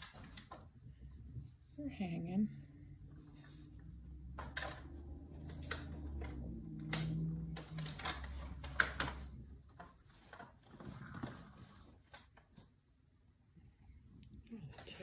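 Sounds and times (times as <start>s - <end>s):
plastic container clicking and rattling: 4.3s - 12.6s.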